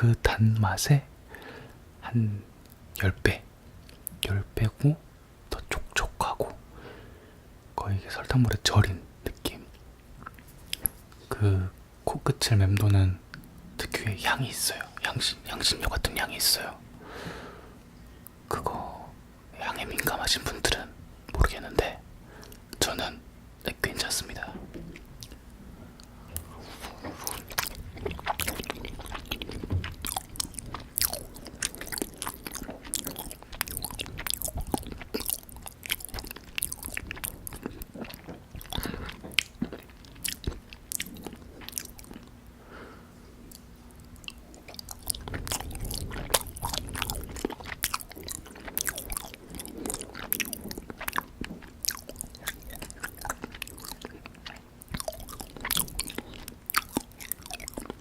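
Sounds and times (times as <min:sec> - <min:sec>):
wet chewing: 0:24.0 - 0:42.4, 0:43.5 - 0:58.0.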